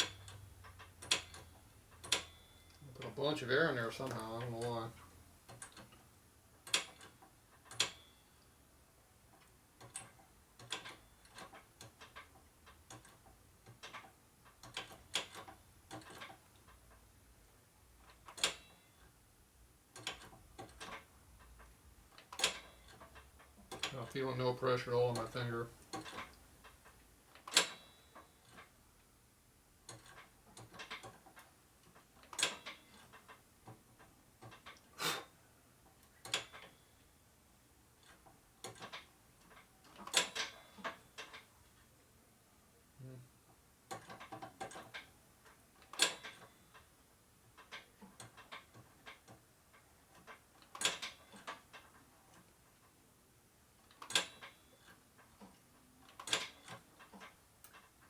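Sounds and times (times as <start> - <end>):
sharp clicks and knocks: 19.9 - 27.8.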